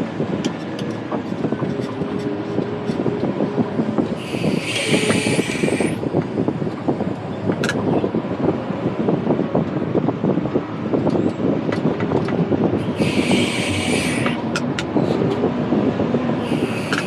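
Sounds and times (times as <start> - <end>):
hiss: 4.2 - 6.0, 12.8 - 14.4, 16.4 - 17.0.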